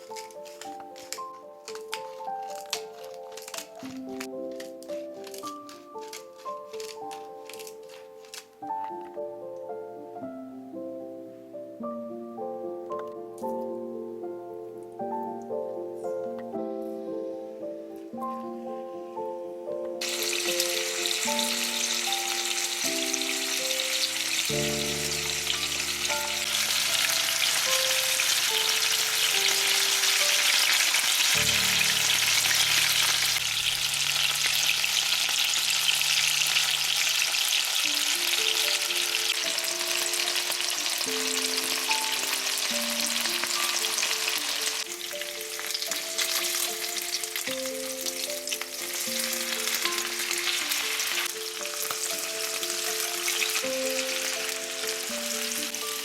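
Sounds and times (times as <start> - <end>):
background music: 0.0 - 34.3, 37.4 - 56.0
food sizzling in oil: 20.0 - 56.0.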